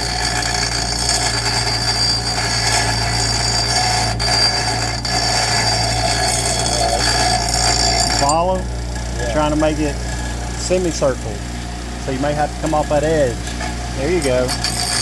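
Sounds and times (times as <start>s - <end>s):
angle grinder cutting steel: 0.0s - 15.0s.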